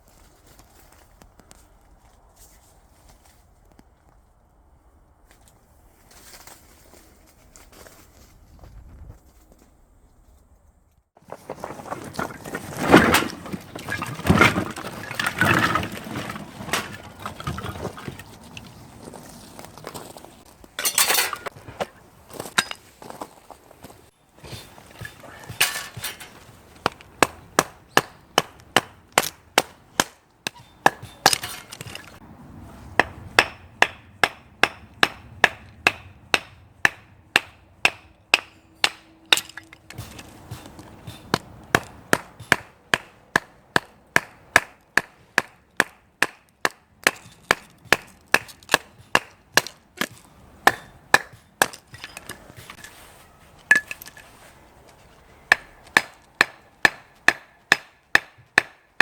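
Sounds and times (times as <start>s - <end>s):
axe chopping wood: 24.4s - 32.2s, 33.0s - 52.8s, 55.5s - 59.0s.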